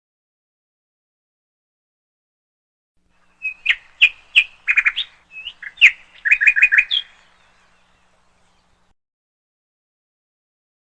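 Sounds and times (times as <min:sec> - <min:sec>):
bird chirping and trilling: 0:03.2 - 0:08.9.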